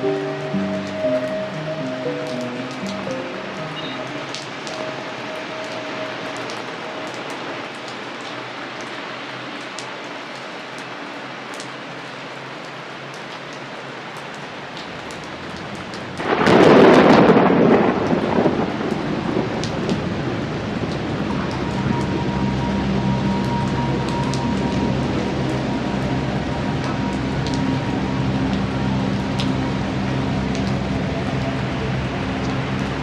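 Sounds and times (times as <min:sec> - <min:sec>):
steady rain: 0:00.0 - 0:33.0
thunder clap rumbling: 0:15.3 - 0:33.0.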